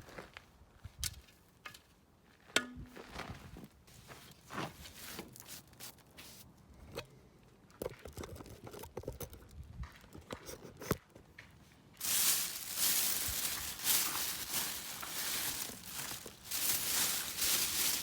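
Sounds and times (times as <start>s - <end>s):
plastic or paper crinkling: 12.0s - 18.0s.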